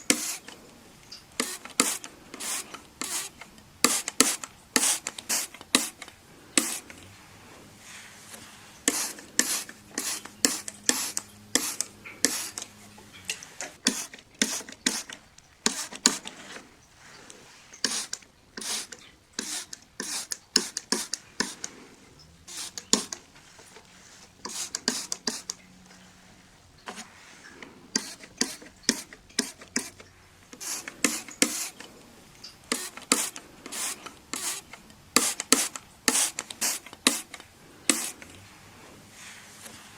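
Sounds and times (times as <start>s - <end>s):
rubbing on window glass: 1.4s - 32.0s.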